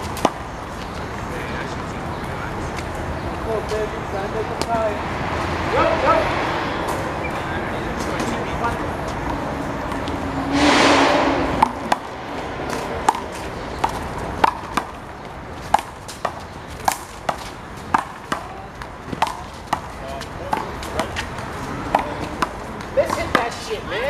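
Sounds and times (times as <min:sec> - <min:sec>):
handball slapping and bouncing: 0:00.0 - 0:00.4, 0:12.7 - 0:15.0, 0:15.6 - 0:23.6.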